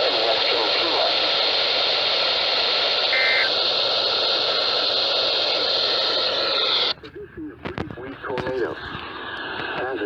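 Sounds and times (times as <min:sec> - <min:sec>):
radio static hiss: 0:00.0 - 0:02.1, 0:02.9 - 0:10.0
short electronic beep: 0:03.1 - 0:03.5.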